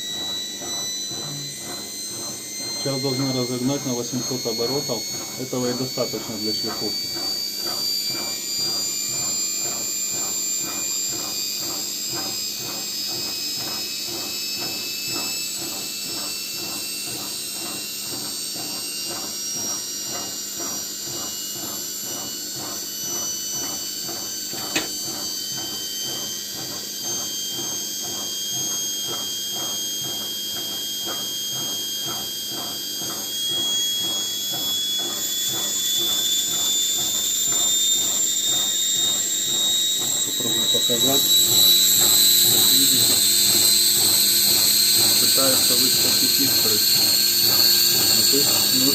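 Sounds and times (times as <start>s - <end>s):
electric motor whine: 0.0s - 48.9s
stone grinding commutator: 36.0s - 48.9s.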